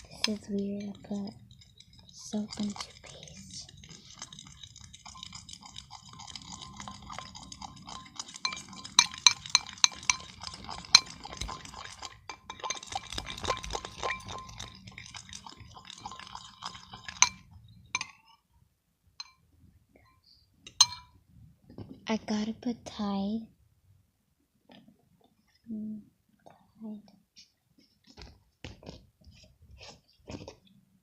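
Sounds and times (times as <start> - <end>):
spoon scraping a container: 0.0 - 18.4, 20.7 - 21.1, 28.9 - 30.7.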